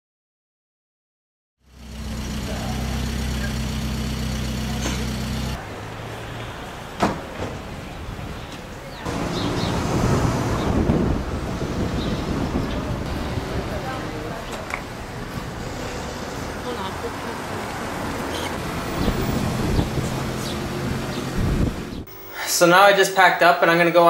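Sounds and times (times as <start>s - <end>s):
rushing noise: 9.1s - 16.7s.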